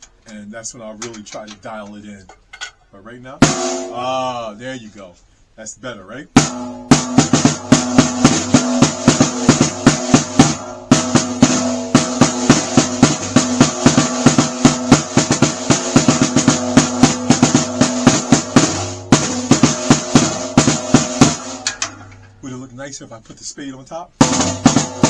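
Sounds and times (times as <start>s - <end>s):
snare drum struck rapidly: 3.4s - 4.1s, 6.4s - 22.0s, 24.2s - 25.0s.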